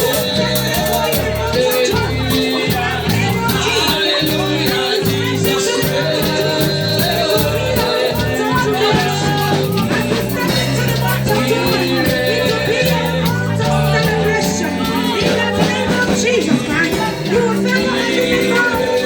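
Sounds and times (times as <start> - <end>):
gospel worship music: 0.0 - 19.0
singing voices: 0.0 - 19.0.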